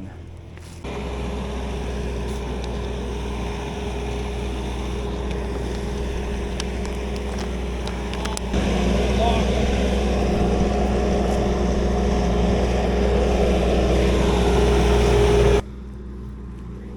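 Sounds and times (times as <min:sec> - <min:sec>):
engine humming: 0:00.0 - 0:16.9.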